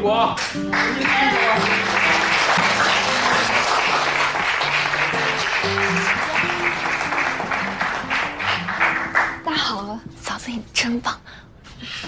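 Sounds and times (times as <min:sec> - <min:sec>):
crowd applauding: 0:00.4 - 0:09.5
music of held notes: 0:00.6 - 0:09.4.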